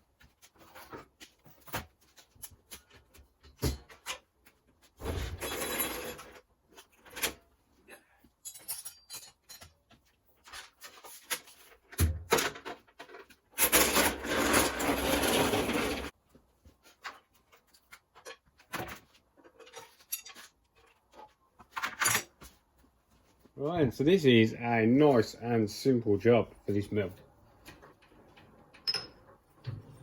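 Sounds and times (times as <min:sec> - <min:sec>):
rasping scrape: 0:13.8 - 0:16.1.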